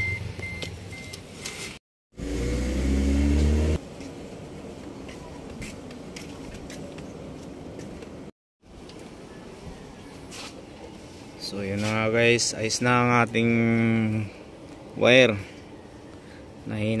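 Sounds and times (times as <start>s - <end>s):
loud engine: 2.2s - 3.8s.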